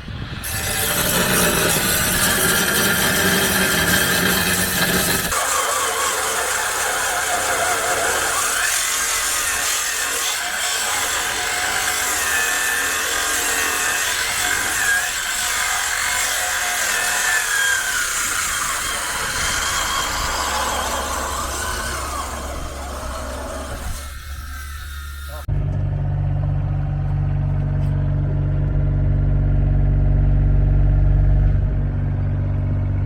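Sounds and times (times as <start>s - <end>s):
power tool cutting steel bolts: 0.4s - 25.5s.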